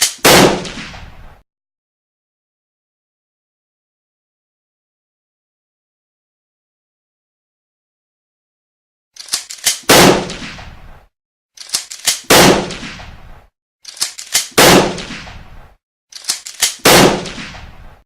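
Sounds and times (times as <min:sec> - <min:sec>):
shotgun shots: 0:00.0 - 0:01.1, 0:09.6 - 0:10.8, 0:12.0 - 0:13.2, 0:14.3 - 0:15.5, 0:16.3 - 0:18.0.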